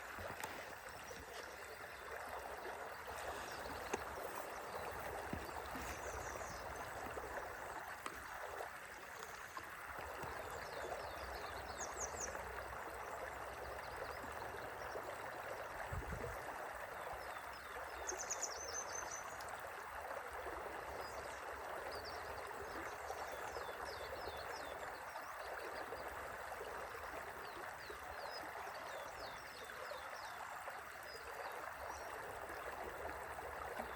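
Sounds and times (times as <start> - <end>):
river flowing gently: 0.0 - 33.9.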